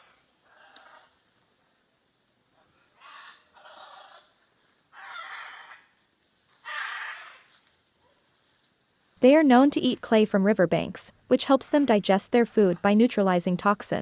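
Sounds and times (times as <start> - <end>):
macaws squawking harshly: 5.0 - 5.8, 6.6 - 7.5.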